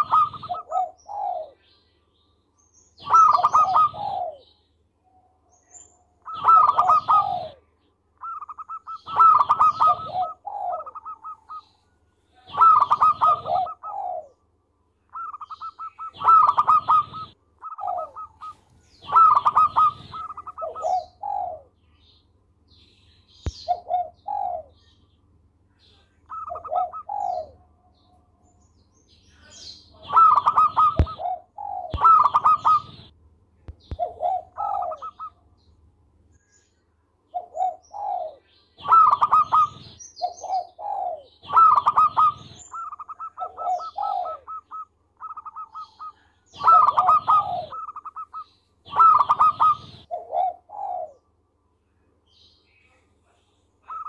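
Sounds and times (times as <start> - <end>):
dove cooing: 0.0 - 1.7, 3.0 - 4.6, 6.2 - 14.4, 15.1 - 21.8, 23.5 - 24.8, 26.3 - 27.7, 29.5 - 33.1, 33.8 - 35.4, 37.3 - 51.3.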